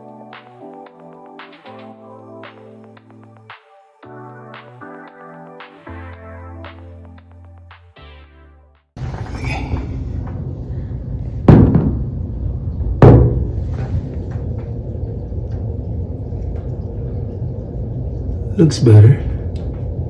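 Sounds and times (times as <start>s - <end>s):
steady low rumble: 9.0s - 20.0s
loud knocks: 11.5s - 12.2s, 13.0s - 13.8s.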